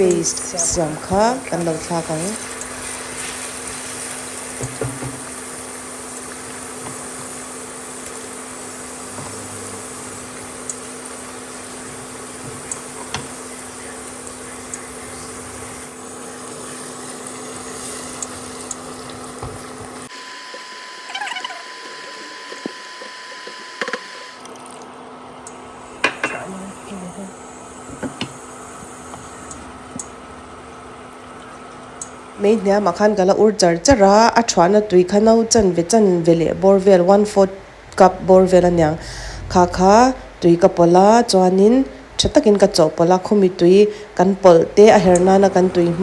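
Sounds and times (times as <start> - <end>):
paste sizzling in hot oil: 0.0 - 24.2.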